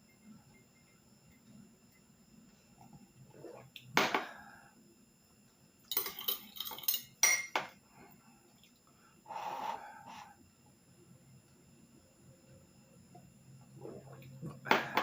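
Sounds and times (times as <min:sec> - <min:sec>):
cup and spoon clinking: 0:05.9 - 0:07.7.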